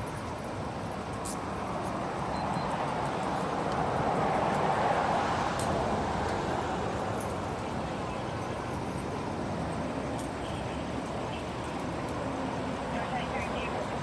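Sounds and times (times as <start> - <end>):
vehicle passing by: 3.8 - 7.1.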